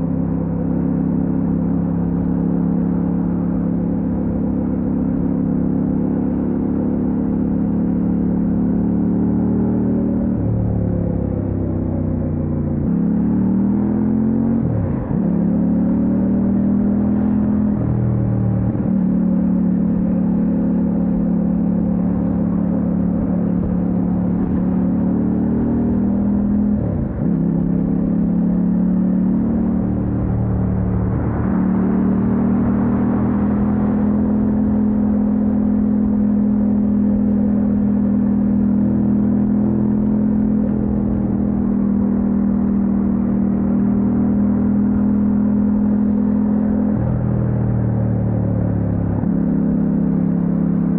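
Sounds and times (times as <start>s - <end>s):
motorcycle engine running: 19.7s - 46.7s.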